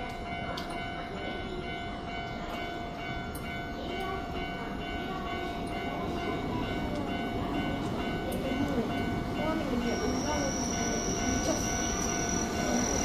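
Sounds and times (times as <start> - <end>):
train passing: 0.0 - 13.0
crossing alarm high tone: 9.0 - 13.0.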